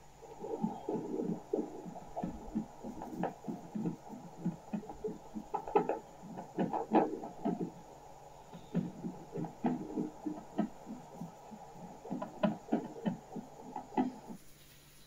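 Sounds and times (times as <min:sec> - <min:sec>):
rhythmic whooshing doppler pulses: 0:00.0 - 0:14.4.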